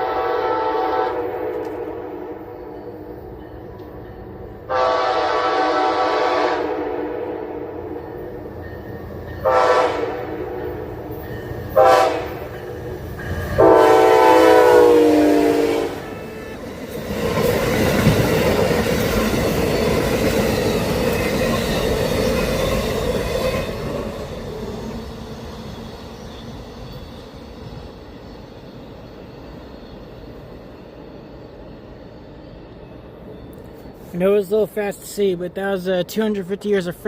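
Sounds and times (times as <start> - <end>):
train horn blasts: 0.0 - 2.9, 4.7 - 8.0, 9.4 - 10.9, 11.7 - 12.6, 13.5 - 16.4
train rushing past: 0.0 - 37.0.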